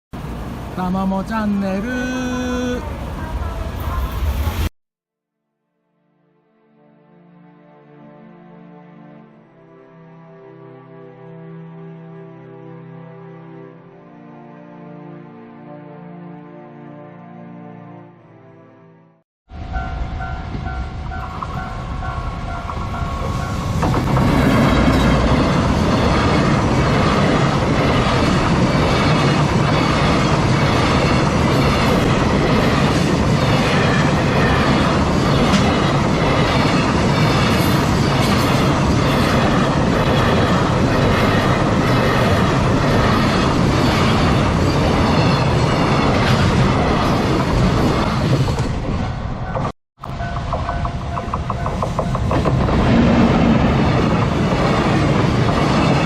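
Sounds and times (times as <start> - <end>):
freight train passing: 0.1 - 4.7, 19.5 - 56.0
level crossing warning bell: 19.7 - 23.6, 50.0 - 52.3.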